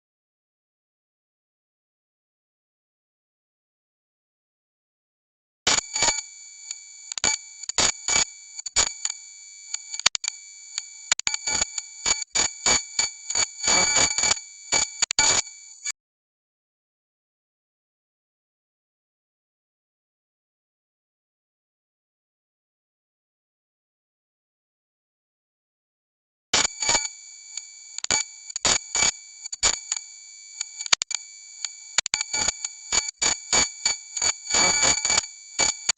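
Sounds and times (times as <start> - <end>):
glitchy crackling bursts: 11.1 - 15.4, 30.7 - 35.9.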